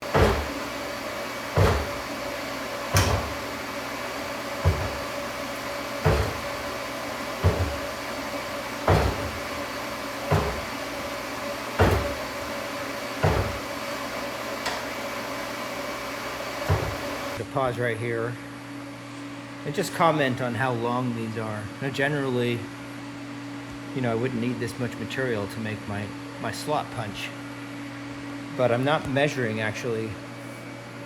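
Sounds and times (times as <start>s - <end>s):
press striking hot steel: 0.0s - 13.8s.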